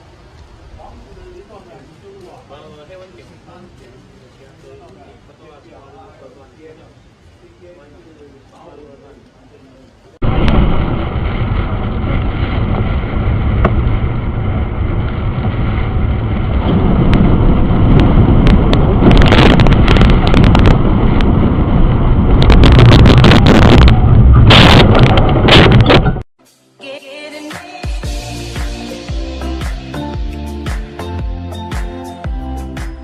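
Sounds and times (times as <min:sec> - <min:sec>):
storm wind buffeting microphone: 0:10.2 - 0:26.2.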